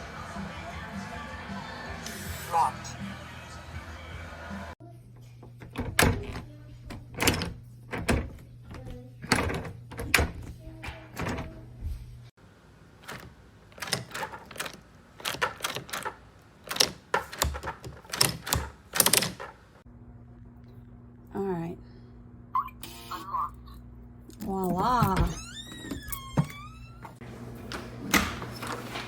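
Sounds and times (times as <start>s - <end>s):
clicks and knocks of door lock: 5.6s - 10.6s, 11.2s - 11.5s, 13.0s - 19.6s
faint steady hum: 19.7s - 28.7s.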